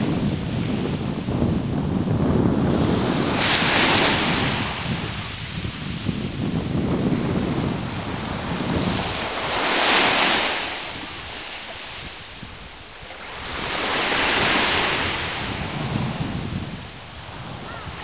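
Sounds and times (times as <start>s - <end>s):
ocean waves breaking on shore: 0.0s - 18.0s.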